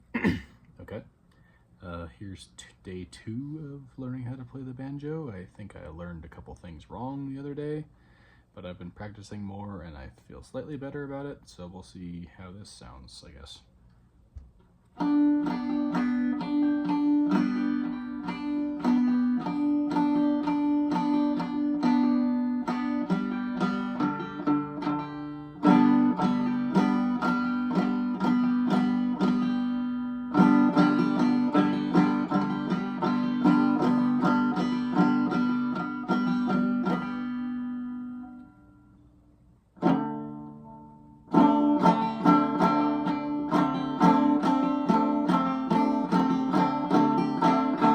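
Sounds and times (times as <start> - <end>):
banjo playing: 15.0 - 38.6, 39.8 - 47.9.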